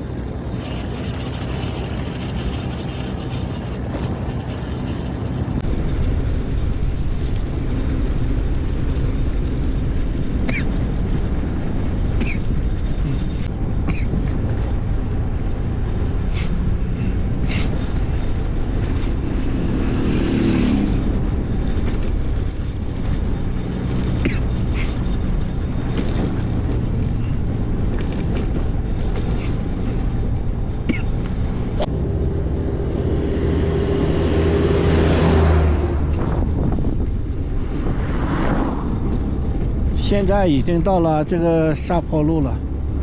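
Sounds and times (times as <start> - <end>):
wind on microphone: 0.0 - 41.7
vehicle rumbling: 0.0 - 43.0
short high squeaks: 0.3 - 5.6.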